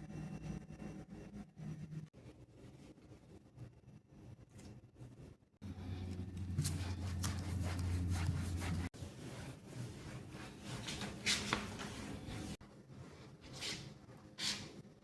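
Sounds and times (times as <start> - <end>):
low steady hum: 0.0 - 14.3
rubbing and scraping: 6.4 - 12.6.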